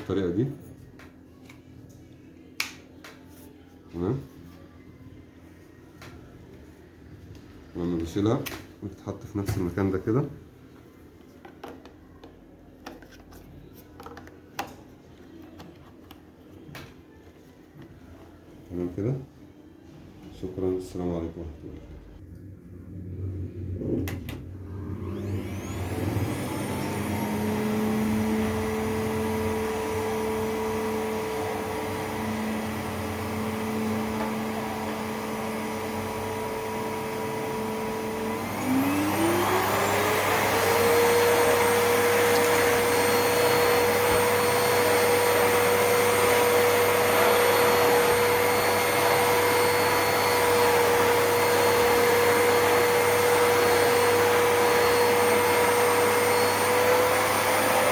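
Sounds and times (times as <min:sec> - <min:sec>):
vacuum cleaner motor whining: 0:24.7 - 0:57.9.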